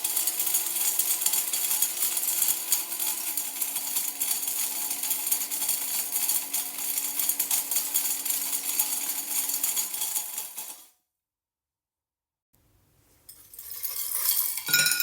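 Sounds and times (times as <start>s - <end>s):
hard pieces rattling in jar: 13.4s - 15.0s.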